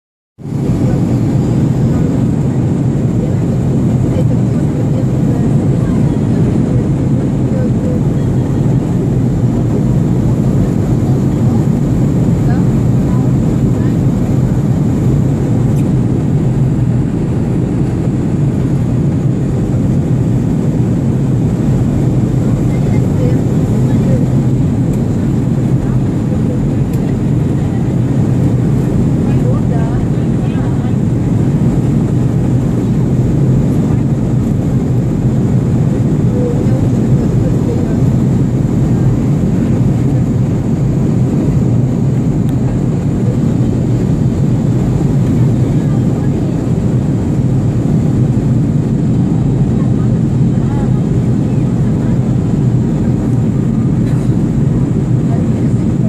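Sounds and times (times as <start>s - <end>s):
aeroplane engines drone: 0.4s - 56.0s
airplane in flight rumble: 0.4s - 56.0s.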